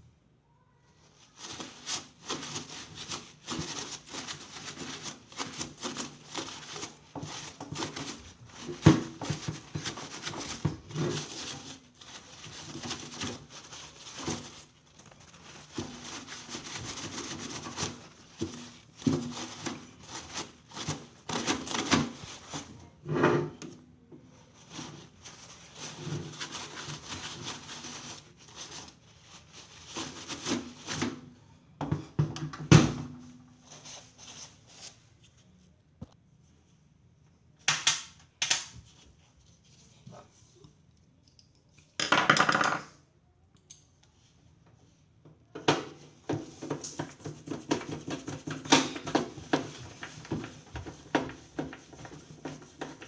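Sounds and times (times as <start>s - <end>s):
rubbing and scraping of parts: 1.4s - 23.7s, 45.9s - 53.0s
light clicks and knocks of tools: 40.6s - 42.0s.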